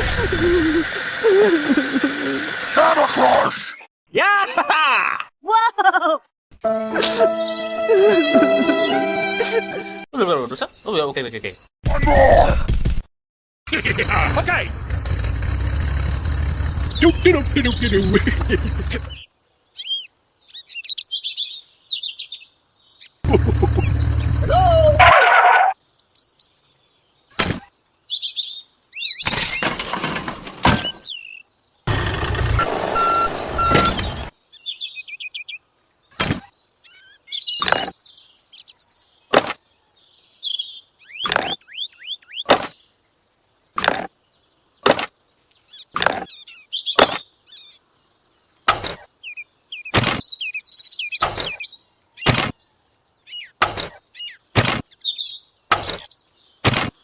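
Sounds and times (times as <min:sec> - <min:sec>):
short bursts of hiss: 0:00.0 - 0:03.4
small birds chirping: 0:10.2 - 0:11.7, 0:13.7 - 0:25.0, 0:25.6 - 0:30.0, 0:30.8 - 0:32.0, 0:33.0 - 0:57.0.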